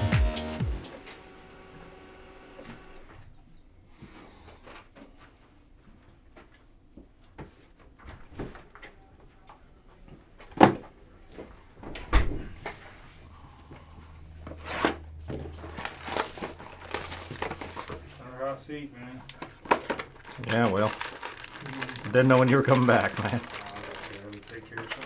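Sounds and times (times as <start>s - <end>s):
card packs being handled: 14.5s - 25.0s
packaging rustle: 15.5s - 18.2s, 19.2s - 25.0s.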